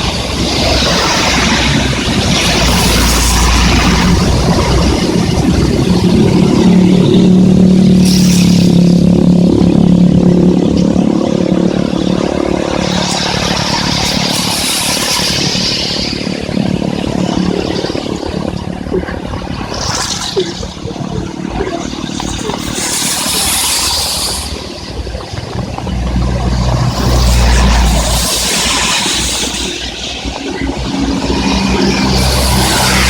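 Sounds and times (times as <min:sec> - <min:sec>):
heavy rain: 0:00.0 - 0:33.0
vehicle engine hum: 0:00.0 - 0:33.0
tyre hiss on wet road: 0:08.0 - 0:08.9, 0:22.2 - 0:24.8, 0:26.9 - 0:30.3.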